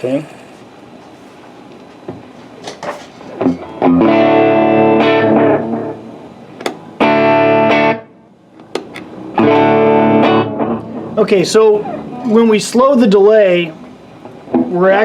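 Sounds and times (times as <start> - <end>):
electric guitar chords with echo: 3.4 - 8.2, 9.0 - 12.4.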